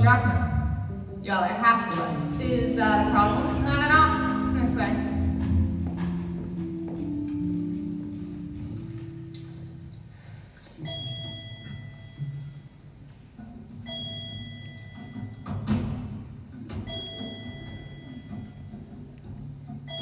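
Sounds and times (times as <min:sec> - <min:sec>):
sustained low chords: 0:01.9 - 0:10.1
ringing high mallet notes: 0:10.9 - 0:12.7.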